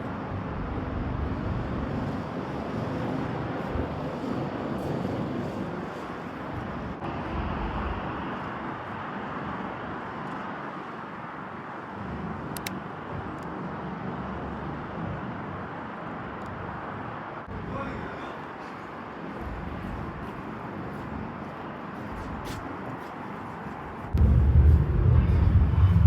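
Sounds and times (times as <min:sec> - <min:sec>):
wind buffeting microphone: 0:00.0 - 0:26.0
road traffic rushing past: 0:07.0 - 0:17.8, 0:21.6 - 0:26.0.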